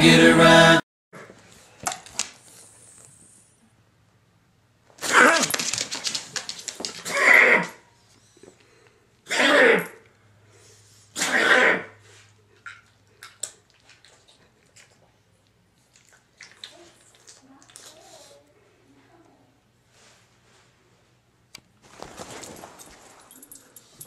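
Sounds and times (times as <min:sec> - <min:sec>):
dog coughing: 0:11.2 - 0:12.0.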